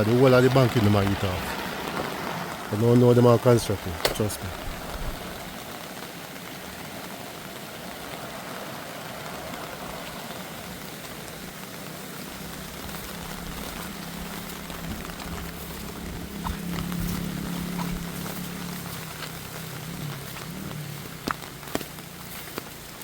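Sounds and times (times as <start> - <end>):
rushing river water: 0.0 - 23.0
low steady hum: 11.4 - 23.0.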